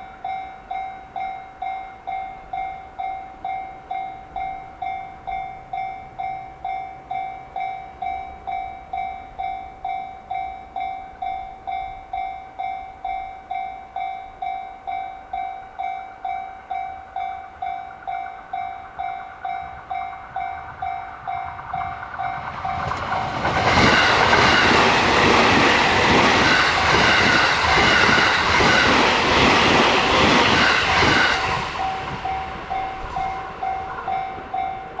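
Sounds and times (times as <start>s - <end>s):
train wheels clattering over rail joints: 18.0s - 35.0s.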